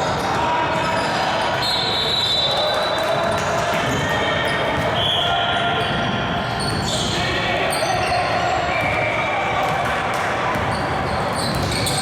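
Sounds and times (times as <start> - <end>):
players and spectators: 0.0 - 12.0
sneaker squeaks on floor: 6.6 - 9.1, 10.5 - 12.0
basketball bouncing on court: 10.5 - 12.0.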